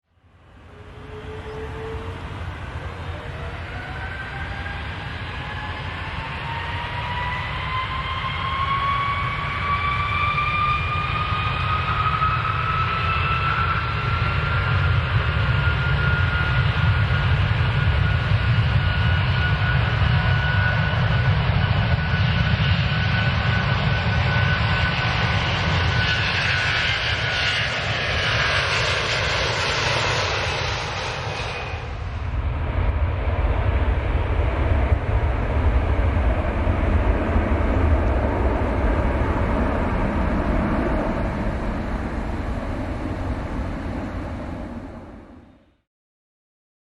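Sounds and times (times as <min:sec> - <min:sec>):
jet engine whine: 0:00.1 - 0:45.9
heavy low engine rumble: 0:31.7 - 0:45.5.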